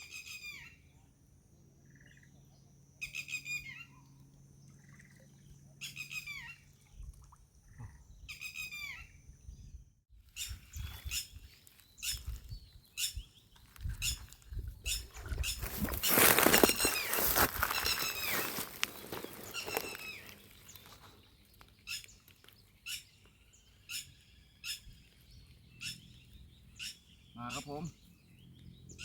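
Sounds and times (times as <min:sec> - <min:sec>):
bird calling falling notes: 0:15.4 - 0:21.0.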